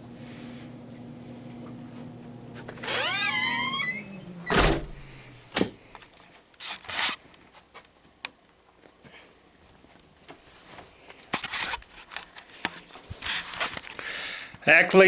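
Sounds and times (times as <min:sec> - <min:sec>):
wavering squeak: 0:02.8 - 0:05.3
loud thump: 0:04.5 - 0:05.3.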